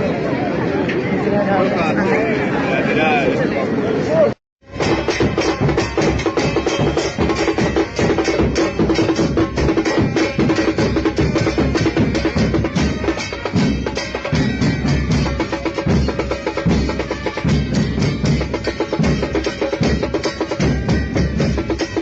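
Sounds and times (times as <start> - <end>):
deep bass drum beats: 4.6 - 22.0
drum band playing fast rhythm: 4.6 - 22.0.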